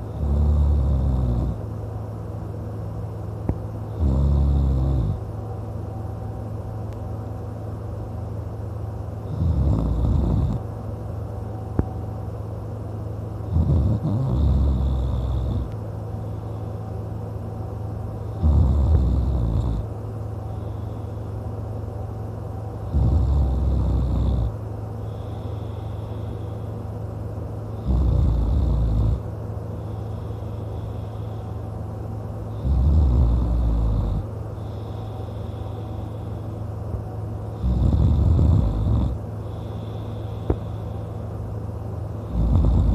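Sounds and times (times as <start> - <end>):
man snoring loudly: 0.0 - 1.6, 3.9 - 5.3, 9.2 - 10.6, 13.5 - 15.8, 18.2 - 19.9, 22.8 - 26.3, 27.7 - 29.2, 32.5 - 36.2, 37.5 - 40.5, 42.2 - 42.9
steady low hum: 0.0 - 42.9.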